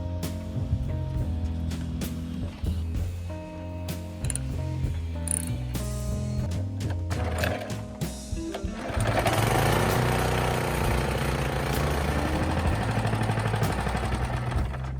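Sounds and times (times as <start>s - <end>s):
background music: 0.0s - 14.9s
small engine running: 7.2s - 7.8s, 8.7s - 14.9s.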